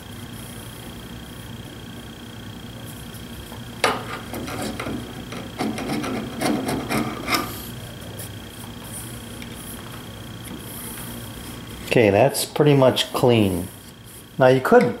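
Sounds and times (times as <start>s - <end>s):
hand scraper scraping glue: 4.1s - 7.6s.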